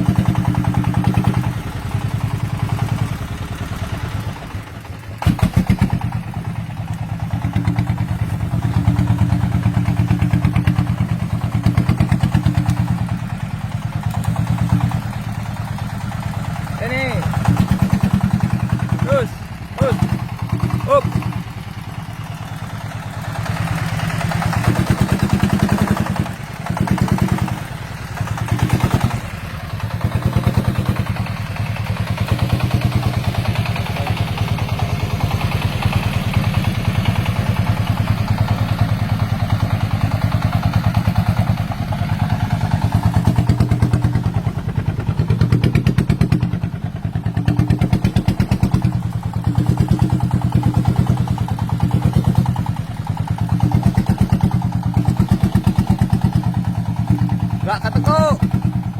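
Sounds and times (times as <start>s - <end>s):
diesel engine chugging: 0.0s - 58.9s.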